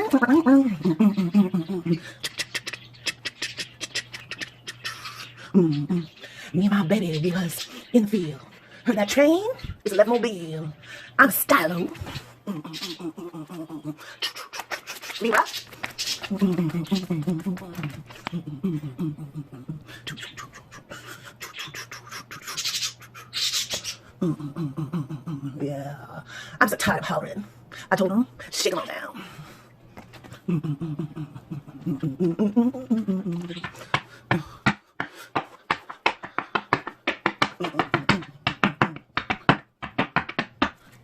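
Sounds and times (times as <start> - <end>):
cards clicking while shuffled: 14.5 - 18.4, 33.5 - 41.0
cards being shuffled: 14.6 - 18.3.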